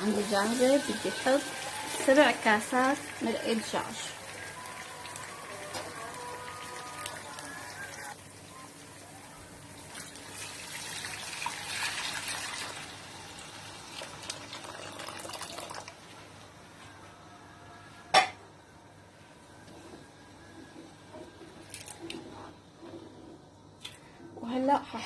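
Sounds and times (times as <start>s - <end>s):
liquid pouring into pot: 9.8s - 16.0s.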